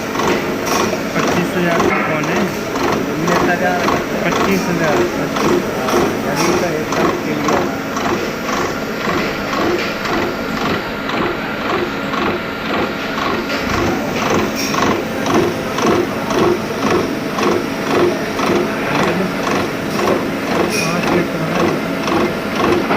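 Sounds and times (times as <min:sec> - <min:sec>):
milling machine clatter: 0:00.0 - 0:22.9.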